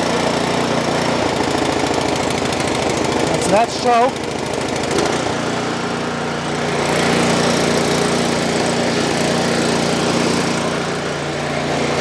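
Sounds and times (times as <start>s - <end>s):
snowblower engine running: 0.0s - 12.0s.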